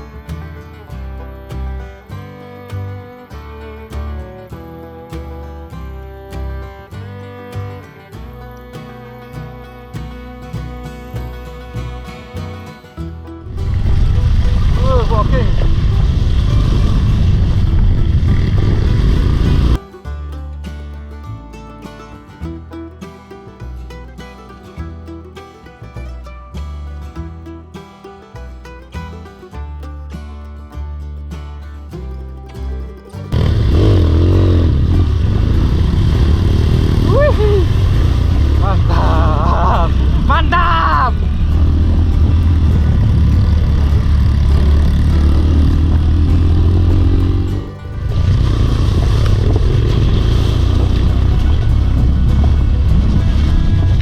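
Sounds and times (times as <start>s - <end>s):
motorcycle engine running: 0.0s - 21.0s, 33.2s - 54.0s
upbeat country music: 0.0s - 54.0s.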